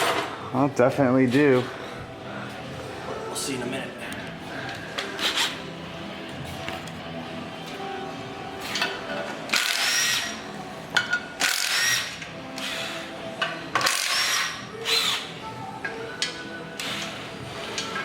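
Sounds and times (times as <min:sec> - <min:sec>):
power tool bursts: 0:11.4 - 0:12.8, 0:13.8 - 0:15.2.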